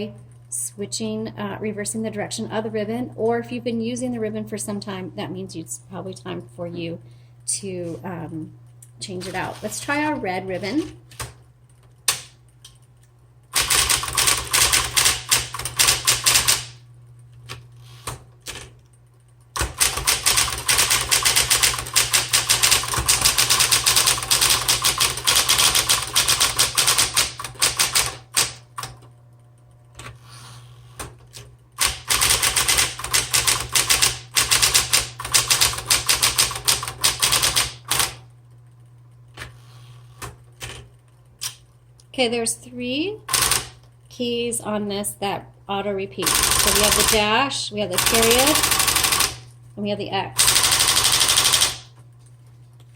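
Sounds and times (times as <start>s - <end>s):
typewriter motor humming: 9.1s - 41.6s, 43.2s - 44.1s, 46.2s - 49.6s, 50.3s - 52.0s
typewriter keystrokes: 12.0s - 12.4s, 13.5s - 16.8s, 19.6s - 29.0s, 31.8s - 38.2s, 46.2s - 47.2s, 48.0s - 49.4s, 50.4s - 51.9s.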